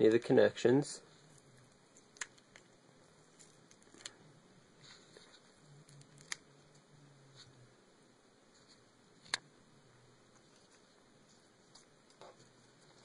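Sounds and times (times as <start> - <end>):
tape being peeled off: 3.3 - 4.2, 4.8 - 6.8.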